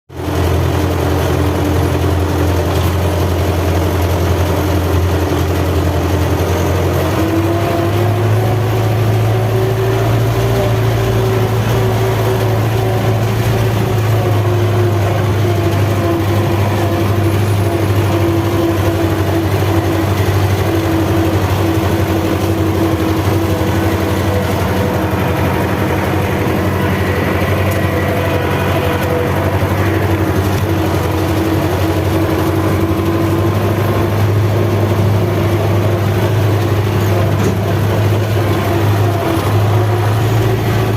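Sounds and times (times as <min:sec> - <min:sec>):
tractor diesel engine running: 0:00.1 - 0:40.9.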